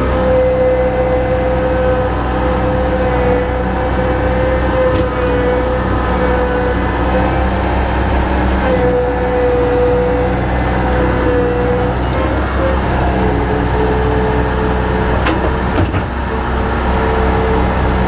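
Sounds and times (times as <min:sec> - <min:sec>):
machinery whine: 0:00.0 - 0:18.0.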